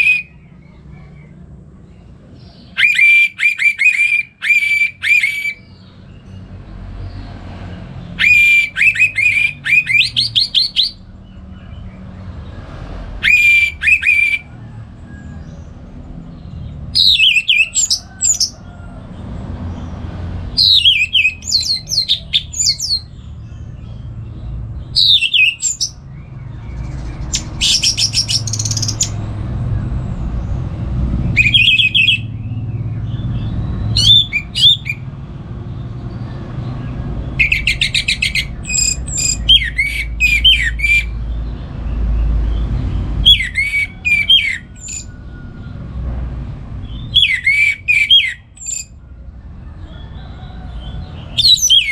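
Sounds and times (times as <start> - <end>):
thrush singing trills and whistles: 0.0 - 0.7, 2.4 - 6.2, 8.0 - 12.0, 13.0 - 18.6, 20.5 - 29.4, 31.3 - 35.2, 36.8 - 45.8, 46.8 - 49.1, 50.0 - 51.9.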